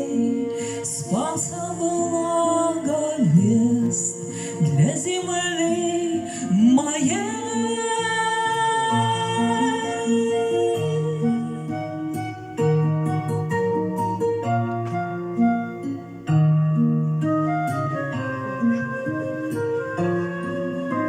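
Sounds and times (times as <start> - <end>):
person singing: 0.0 - 12.9, 18.6 - 21.0
instrumental backing: 0.0 - 21.0.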